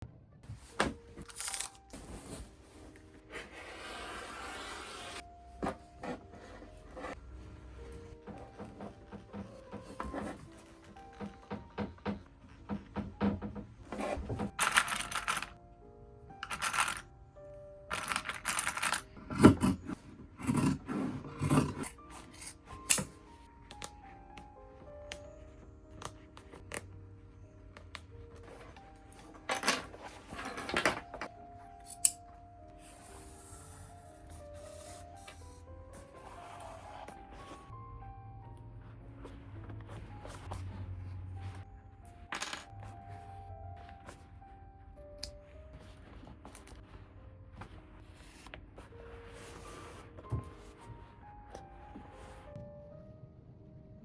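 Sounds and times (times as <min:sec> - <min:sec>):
soft background music: 0:00.0 - 0:54.0
fabric rubbing and scraping: 0:01.9 - 0:07.2.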